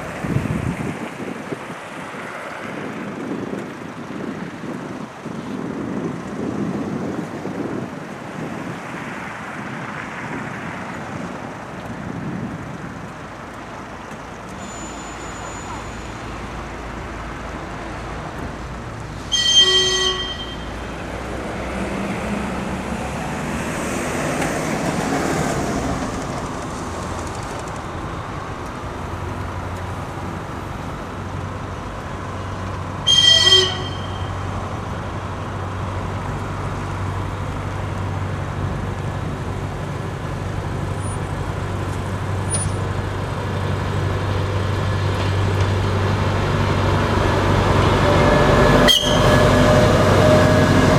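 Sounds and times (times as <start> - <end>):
diesel engine rumbling: 10.6 - 50.9
train horn toots: 19.3 - 20.8, 33.1 - 34.4, 48.0 - 50.9.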